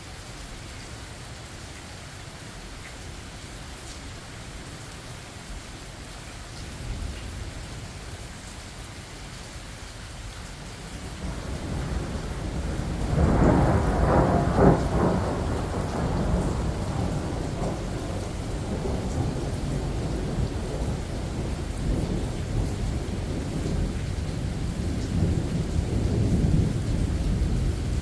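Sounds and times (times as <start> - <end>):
steady rain: 0.0 - 28.0
thunder rumbling: 11.2 - 28.0.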